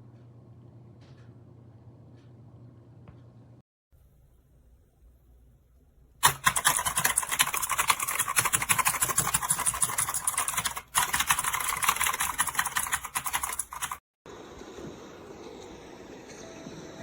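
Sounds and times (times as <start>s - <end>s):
fast typing on keyboard: 6.2s - 14.0s.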